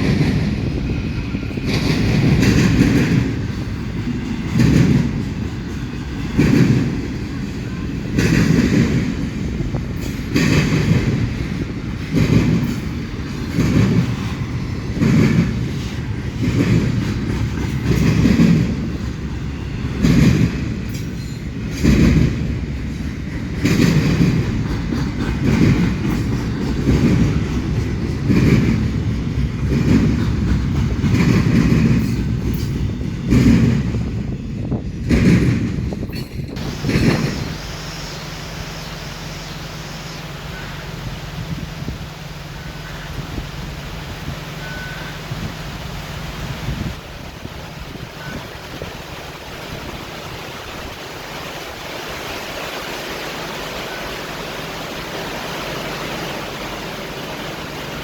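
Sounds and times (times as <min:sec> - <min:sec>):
train wheels clacking over rail joints: 0:00.0 - 0:39.5
low rumble of train cars: 0:00.0 - 0:58.0.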